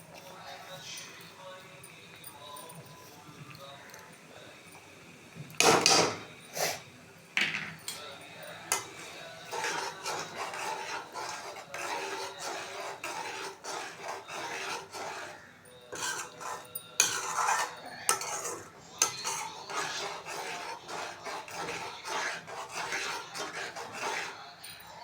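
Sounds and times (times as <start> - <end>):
spoon scraping a pan: 5.5 - 6.8, 7.8 - 25.0.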